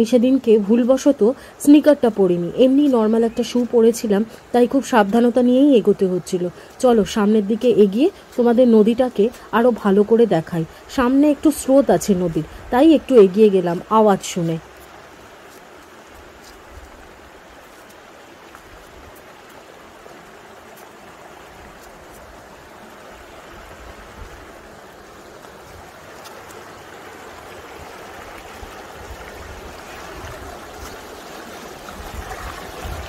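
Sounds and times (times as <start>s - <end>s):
water rushing over rocks: 10.7s - 33.0s.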